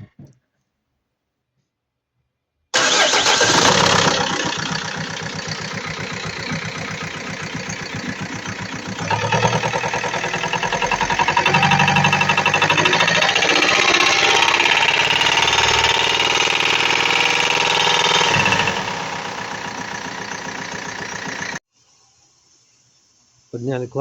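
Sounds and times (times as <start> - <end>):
diesel engine starting: 2.8 - 21.6
engine rhythmic knock: 3.5 - 21.6.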